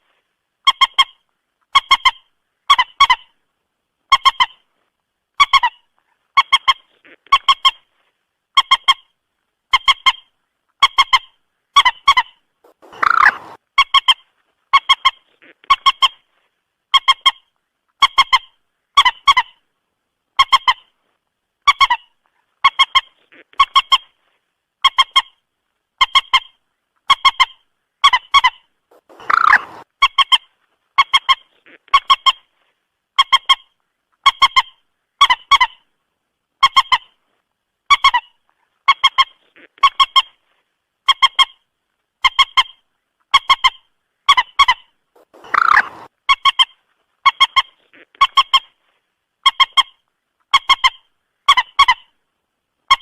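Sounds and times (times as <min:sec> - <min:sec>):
moorhen honking calls: 0:12.7 - 0:13.6, 0:28.9 - 0:29.8, 0:45.2 - 0:46.1.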